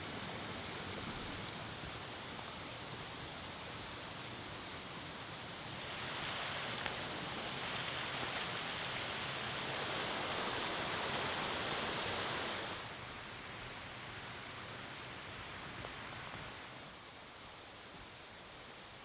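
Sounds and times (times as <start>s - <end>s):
running water rushing: 0.0s - 12.9s.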